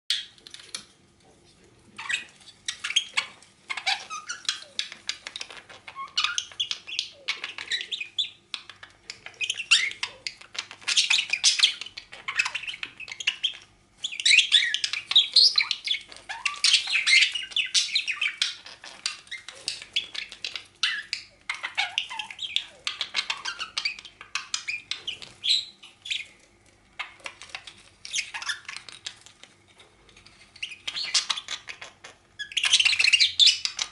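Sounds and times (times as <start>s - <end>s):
pet bird chattering: 2.0s - 26.4s, 27.0s - 29.4s, 30.3s - 33.9s.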